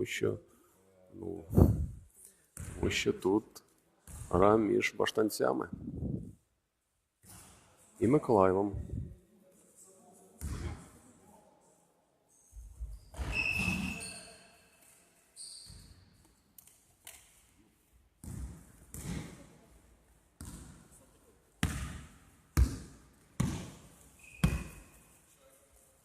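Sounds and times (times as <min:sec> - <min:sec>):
high squeaks: 0:13.1 - 0:14.8
basketball bouncing on gym floor: 0:18.2 - 0:19.4, 0:20.4 - 0:20.9, 0:21.6 - 0:24.8.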